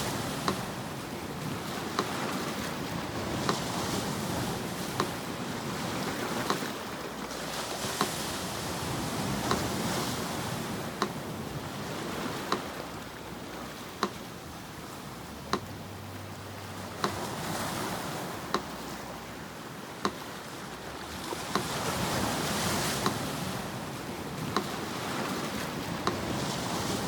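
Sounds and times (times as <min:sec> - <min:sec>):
sea surf washing: 0:00.0 - 0:27.0
metronome ticking: 0:00.2 - 0:00.9, 0:03.0 - 0:05.3, 0:06.0 - 0:06.8, 0:08.8 - 0:11.6, 0:12.3 - 0:25.0, 0:25.9 - 0:27.0.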